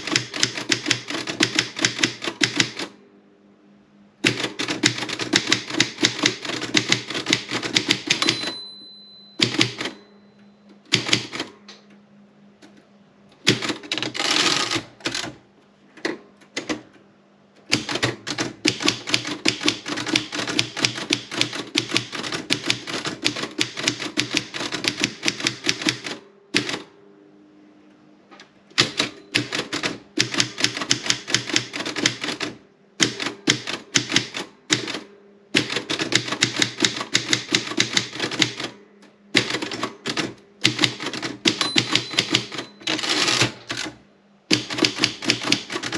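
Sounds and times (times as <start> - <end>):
manual typewriter key strikes: 0.0 - 2.9, 4.2 - 10.1, 10.9 - 11.6, 13.4 - 15.4, 17.7 - 26.9, 28.7 - 38.8, 39.4 - 45.9
typewriter bell ring: 8.0 - 10.6, 41.5 - 43.5.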